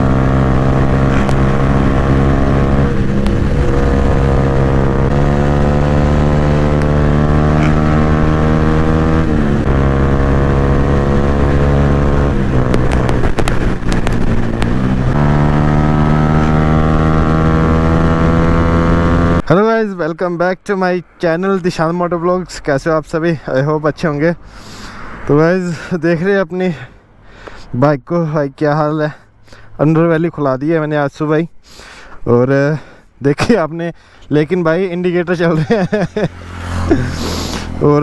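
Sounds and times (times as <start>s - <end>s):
motorcycle engine through loud exhaust: 0.0s - 19.4s.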